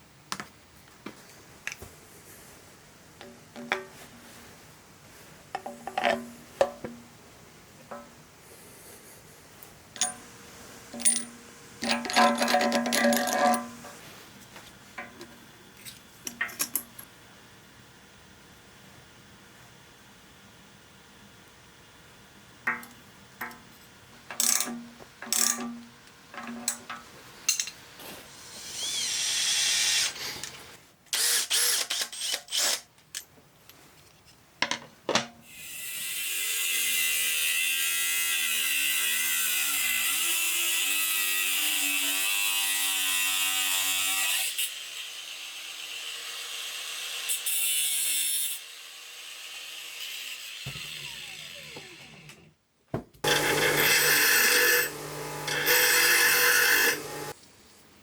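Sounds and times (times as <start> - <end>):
power tool running: 50.5 - 52.5, 53.2 - 57.4
running hum: 53.2 - 55.9, 56.5 - 57.3.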